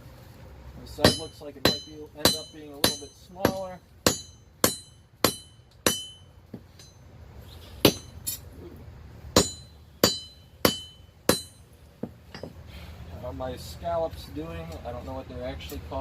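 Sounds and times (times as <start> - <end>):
hammer striking metal on anvil: 1.0 - 7.1, 7.8 - 8.4, 9.4 - 12.6.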